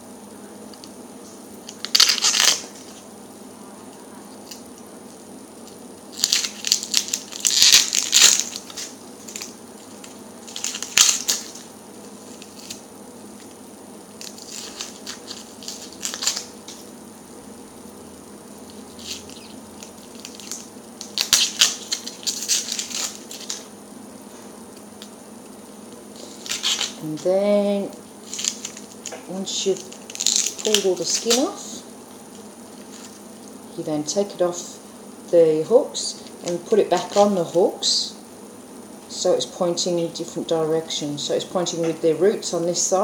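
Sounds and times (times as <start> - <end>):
onion skin crackling and tearing: 1.6 - 3.1, 3.9 - 4.9, 5.5 - 16.9, 17.7 - 23.7, 24.7 - 27.3, 27.9 - 33.6.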